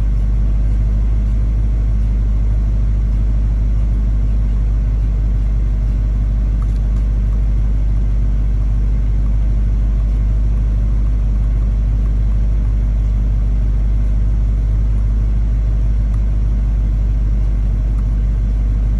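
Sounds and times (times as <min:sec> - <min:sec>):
car engine rumbling: 0:00.0 - 0:18.9.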